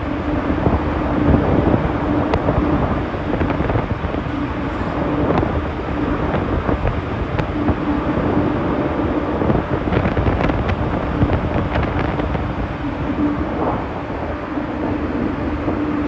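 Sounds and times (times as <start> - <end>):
ferry engine rumble: 0.0 - 16.0
low hum: 0.0 - 16.0
wind buffeting microphone: 0.0 - 16.0.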